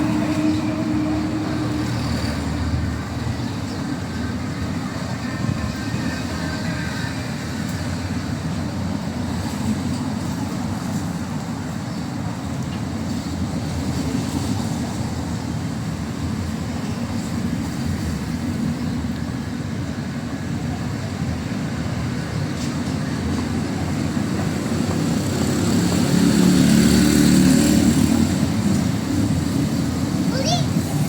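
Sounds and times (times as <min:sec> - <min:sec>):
street traffic rumble: 0:00.0 - 0:31.0
heavy vehicle passing: 0:24.0 - 0:31.0.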